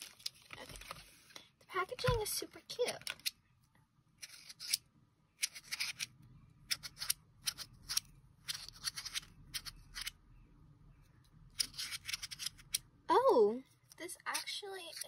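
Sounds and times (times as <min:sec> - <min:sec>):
packaging rustling and snipping: 0:00.0 - 0:01.1.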